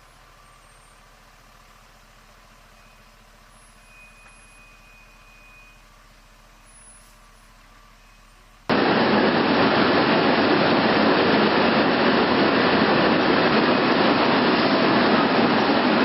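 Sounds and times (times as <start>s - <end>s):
jet aircraft roar: 8.7s - 16.0s.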